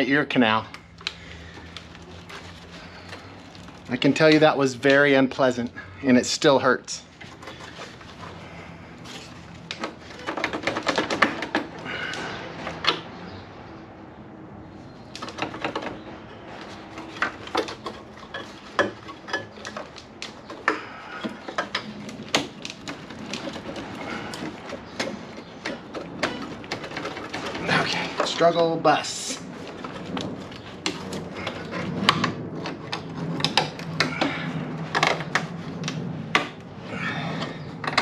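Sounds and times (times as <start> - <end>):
noisy scraping: 0.0 - 38.0
hand tools clattering: 16.6 - 35.5.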